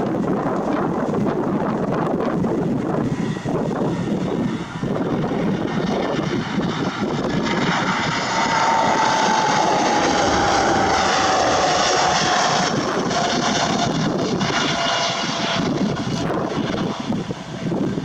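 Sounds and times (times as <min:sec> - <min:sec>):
jet airliner engine roar: 0:00.0 - 0:18.0
wind buffeting microphone: 0:00.0 - 0:18.0
falling whining tone: 0:06.0 - 0:16.8.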